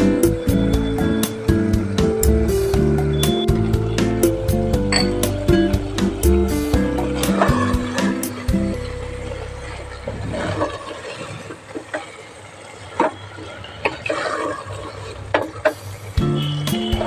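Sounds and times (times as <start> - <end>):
spoon knocking on metal pot: 4.9 - 5.3.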